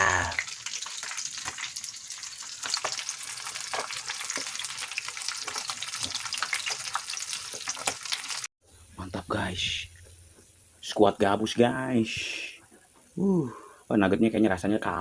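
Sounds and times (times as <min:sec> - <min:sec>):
fish frying in hot oil: 0:00.0 - 0:08.5.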